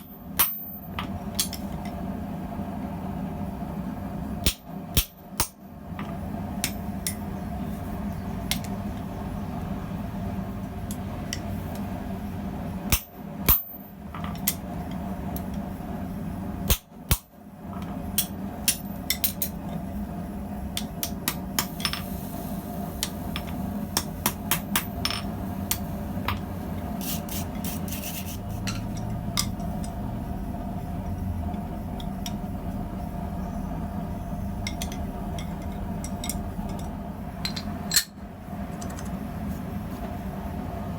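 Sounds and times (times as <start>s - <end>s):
hammer striking steel on anvil: 0.0s - 0.8s, 4.4s - 5.6s, 12.9s - 13.8s
steady background hum: 0.0s - 40.9s.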